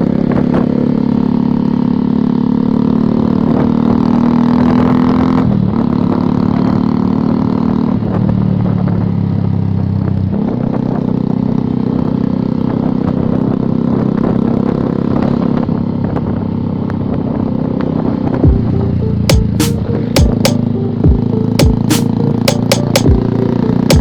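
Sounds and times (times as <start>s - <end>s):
motorcycle engine running: 18.4s - 24.0s.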